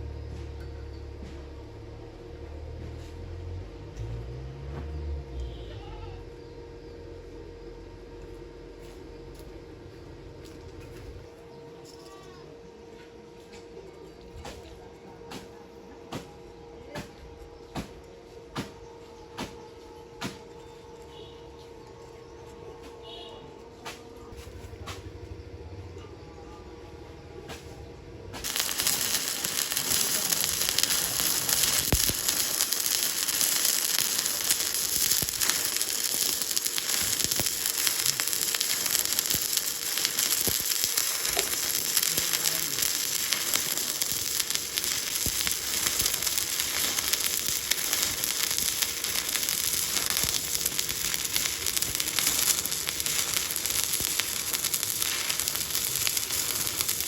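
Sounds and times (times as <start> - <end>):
welding arc crackling and sizzling: 28.4 - 57.0.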